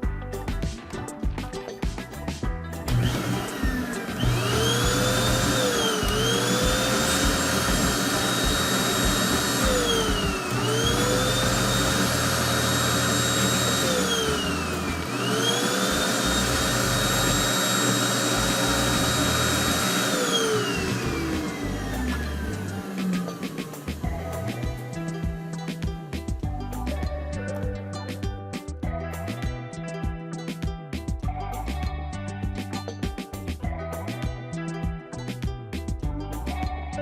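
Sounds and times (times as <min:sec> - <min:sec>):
small electric motor whining: 0:02.9 - 0:24.2.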